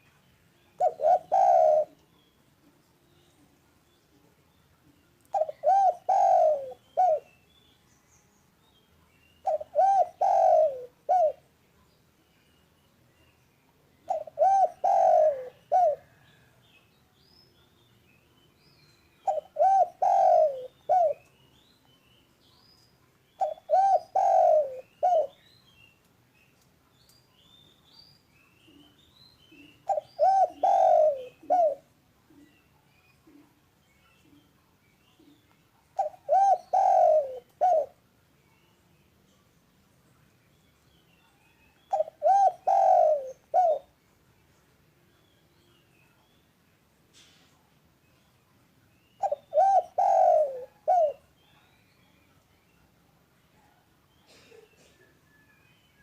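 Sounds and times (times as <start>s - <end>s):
small birds chirping: 0.0s - 56.0s
dove cooing: 0.8s - 2.0s, 5.3s - 7.3s, 9.4s - 11.4s, 14.1s - 16.5s, 19.2s - 21.3s, 23.4s - 25.4s, 29.5s - 32.6s, 36.0s - 38.0s, 41.9s - 43.9s, 49.2s - 51.2s.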